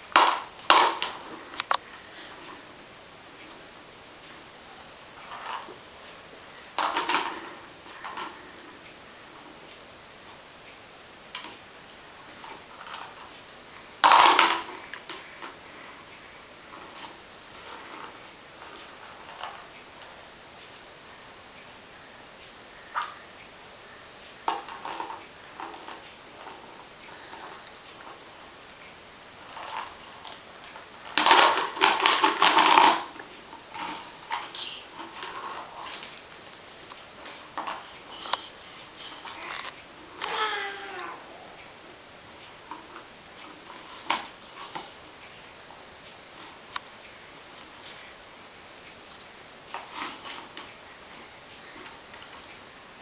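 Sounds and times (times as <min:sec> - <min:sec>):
ball rattling in plastic toy: 0:14.0 - 0:15.5, 0:31.0 - 0:36.1.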